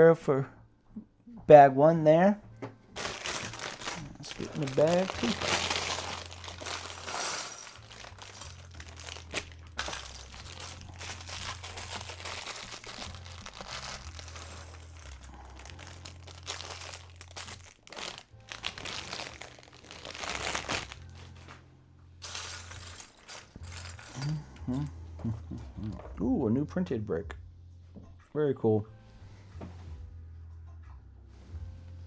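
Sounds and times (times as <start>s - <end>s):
soft background music: 0.0s - 32.0s
plastic bag crinkling: 3.0s - 21.6s, 22.2s - 24.8s.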